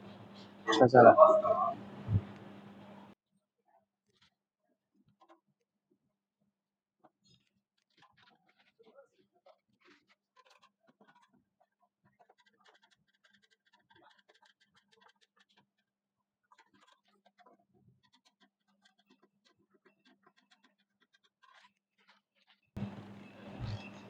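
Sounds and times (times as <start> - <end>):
faint clicks and scratches: 0.0 - 3.1, 7.2 - 11.4, 12.1 - 24.0.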